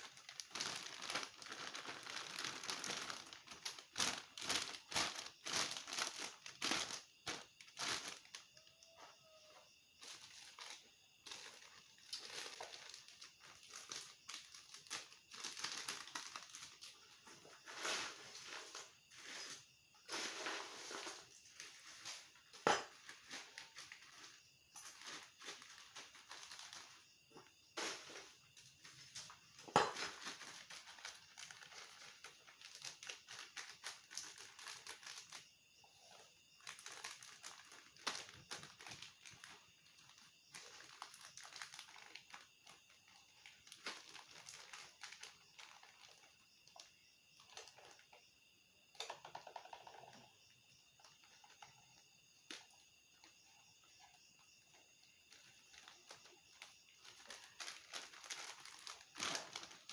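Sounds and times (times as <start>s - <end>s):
crinkling crackling chips: 0.0s - 8.6s, 10.0s - 17.0s, 22.9s - 27.0s, 28.9s - 35.4s, 36.6s - 48.0s, 55.3s - 59.9s.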